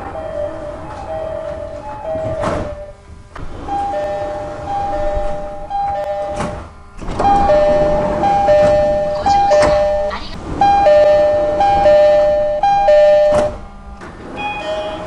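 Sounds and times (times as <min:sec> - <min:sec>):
low train rumble: 0:00.0 - 0:15.0
train door chime: 0:00.0 - 0:15.0.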